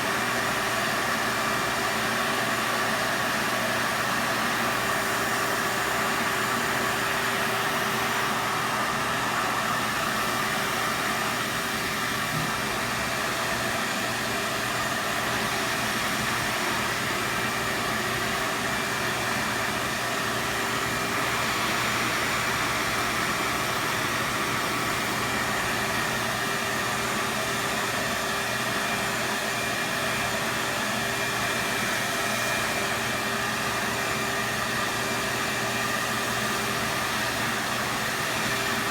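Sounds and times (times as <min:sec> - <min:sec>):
vacuum cleaner running: 0:00.0 - 0:38.9.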